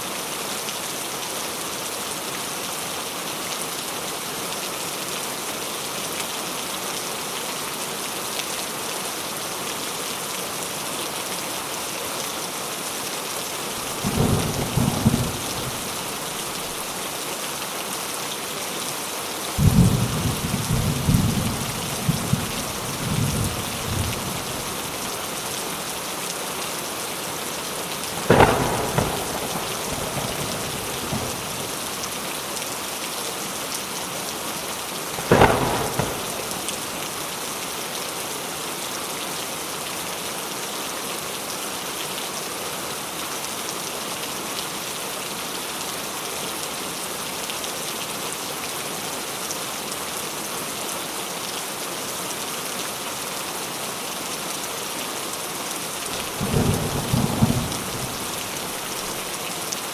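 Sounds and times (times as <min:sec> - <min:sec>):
steady rain falling: 0:00.0 - 0:59.9
thunder: 0:13.9 - 0:16.2, 0:19.6 - 0:25.0, 0:28.2 - 0:31.8, 0:35.2 - 0:37.2, 0:56.2 - 0:59.2.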